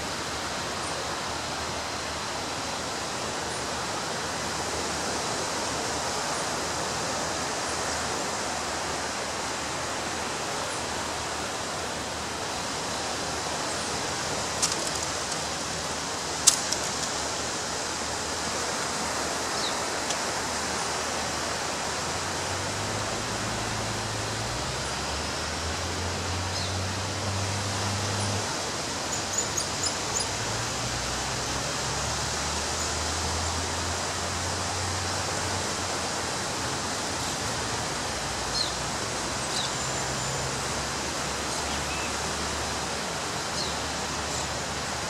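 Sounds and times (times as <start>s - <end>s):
sharp clicks: 14.6s - 15.5s, 16.4s - 17.2s.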